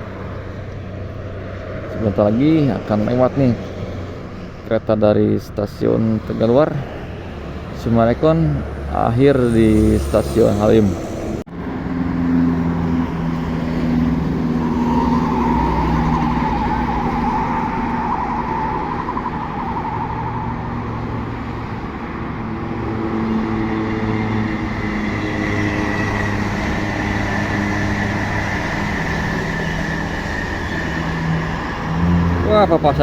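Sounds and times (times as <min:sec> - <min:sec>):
electric train running on track: 0:06.2 - 0:20.1, 0:21.1 - 0:33.0.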